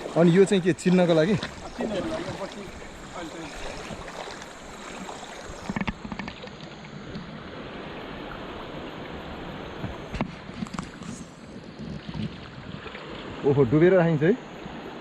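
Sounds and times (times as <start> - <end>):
sharp knocks or splashes: 0.0 - 6.5
river water rushing: 0.0 - 11.5.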